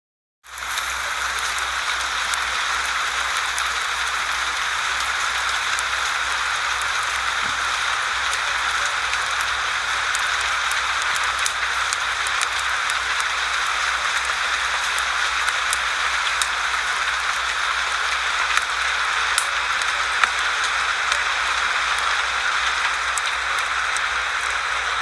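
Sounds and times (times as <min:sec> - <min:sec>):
steady rain: 0:00.4 - 0:25.0.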